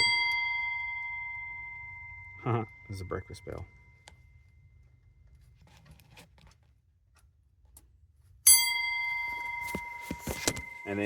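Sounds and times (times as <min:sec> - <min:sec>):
bell ringing: 0:00.0 - 0:04.4, 0:08.5 - 0:11.0.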